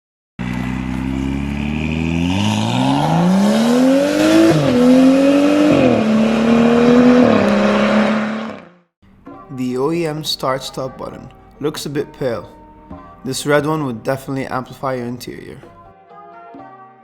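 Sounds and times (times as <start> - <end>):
car engine accelerating: 0.4 - 8.9.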